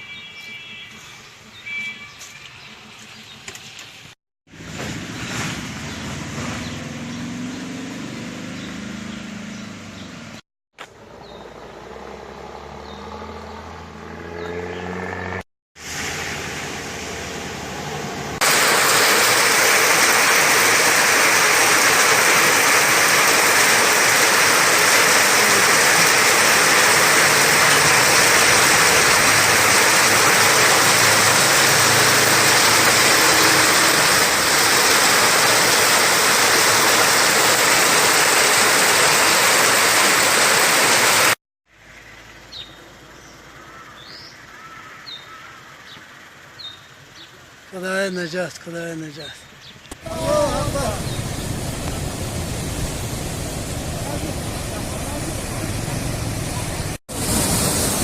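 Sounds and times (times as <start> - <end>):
vehicle engine running: 16.2 - 39.4
fast-flowing water rushing: 18.4 - 41.4.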